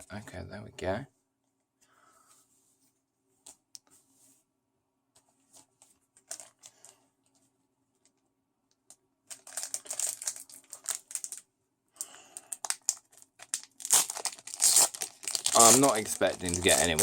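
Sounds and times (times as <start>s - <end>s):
trading cards rustling: 5.4s - 7.0s, 9.3s - 11.4s, 12.5s - 17.0s.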